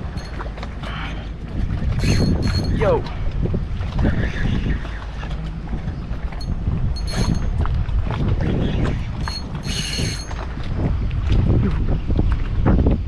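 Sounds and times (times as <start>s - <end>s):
wind rumbling on microphone: 0.0s - 13.0s
fishing reel cranking: 7.0s - 7.5s, 9.2s - 10.3s.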